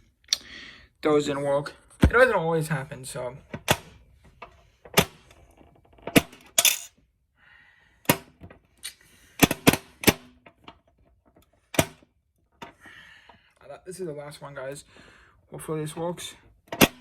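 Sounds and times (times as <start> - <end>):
coins clinking in vending machine: 6.5 - 6.9.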